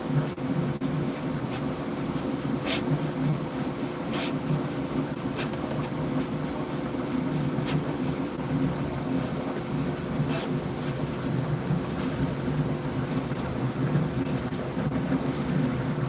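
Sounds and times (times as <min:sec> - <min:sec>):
printer motors and fans humming: 0:00.0 - 0:16.0
short hissy swishes: 0:04.1 - 0:04.5.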